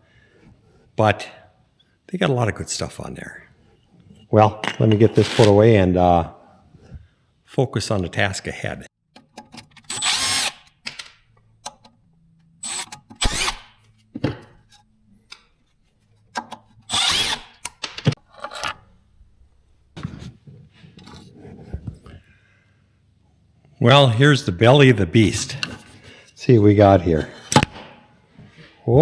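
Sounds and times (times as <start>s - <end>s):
power drill running: 9.9s - 10.7s, 12.6s - 13.9s, 16.9s - 19.9s
handling clicks and knocks: 17.6s - 20.0s.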